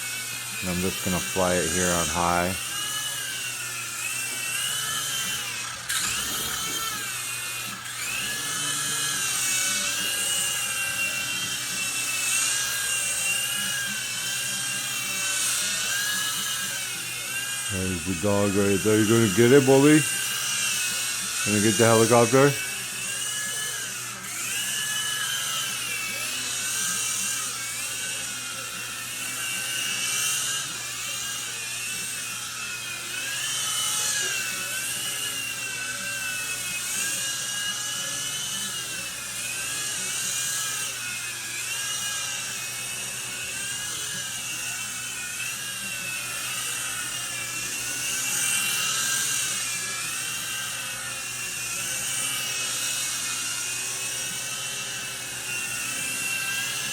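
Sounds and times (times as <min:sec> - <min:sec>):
toy helicopter motors whining: 0:00.0 - 0:56.9.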